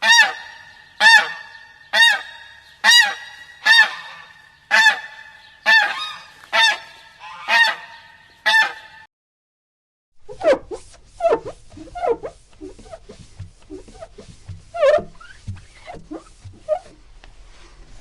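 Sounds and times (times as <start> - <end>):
goose honking with echo: 0.0 - 9.1.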